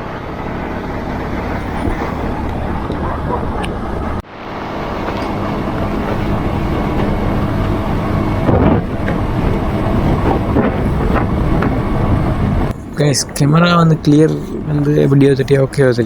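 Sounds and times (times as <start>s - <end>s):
motorbike engine humming: 0.0s - 16.0s
road noise: 0.0s - 16.0s
wind rushing over microphone: 0.0s - 16.0s.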